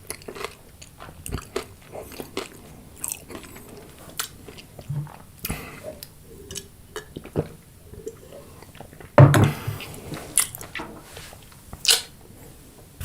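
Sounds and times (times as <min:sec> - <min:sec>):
chewing crunchy fried food: 0:00.0 - 0:09.2.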